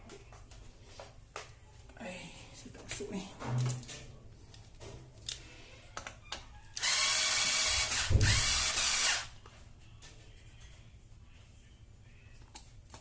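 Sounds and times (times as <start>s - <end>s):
power drill driving a screw: 6.8s - 9.3s.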